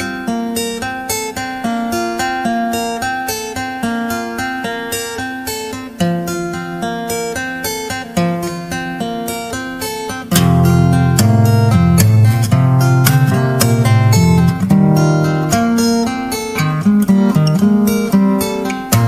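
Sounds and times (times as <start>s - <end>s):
plucked acoustic guitar: 0.0s - 19.0s.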